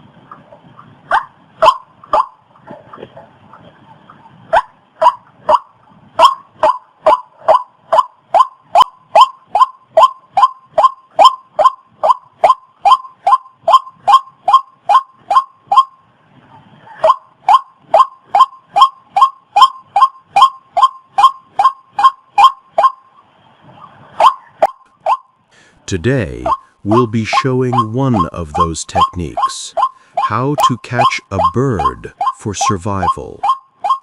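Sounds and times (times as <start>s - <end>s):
bird calling repeated short notes: 26.0s - 34.0s.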